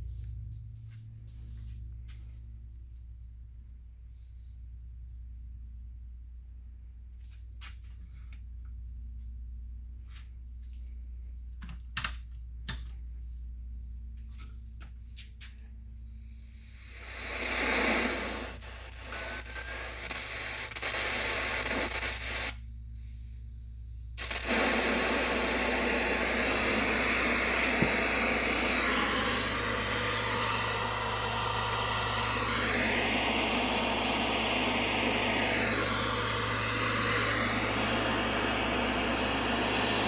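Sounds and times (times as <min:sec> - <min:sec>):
low mains hum: 0:00.0 - 0:40.0
television static hiss: 0:16.9 - 0:22.6, 0:23.8 - 0:40.0.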